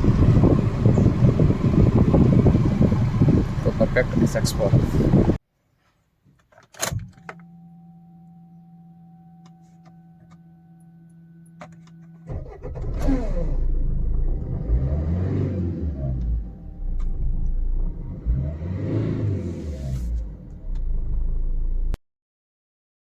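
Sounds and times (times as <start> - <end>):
diesel engine cranking and revving: 0.0 - 5.4, 12.2 - 22.0
fuel pump electric hum: 0.0 - 5.4, 7.0 - 22.0.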